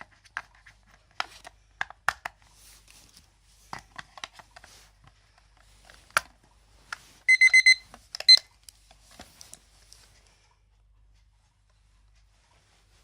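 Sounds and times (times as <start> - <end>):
alarm clock beeping: 7.3 - 8.4.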